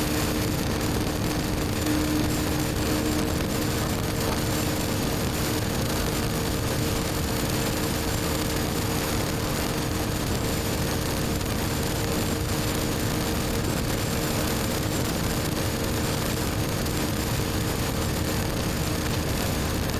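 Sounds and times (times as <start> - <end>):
motorcycle engine running: 0.0 - 19.9
wind noise: 0.0 - 19.9.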